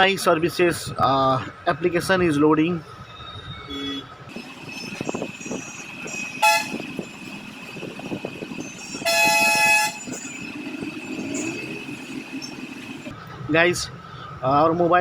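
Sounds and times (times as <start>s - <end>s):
street noise: 2.9s - 13.5s
vehicle horn honking: 4.7s - 7.6s, 8.6s - 10.6s.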